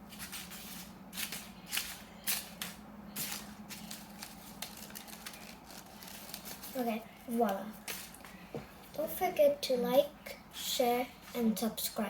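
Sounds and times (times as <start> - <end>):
faint steady hum: 0.0 - 12.0
paper rustling: 0.1 - 8.4.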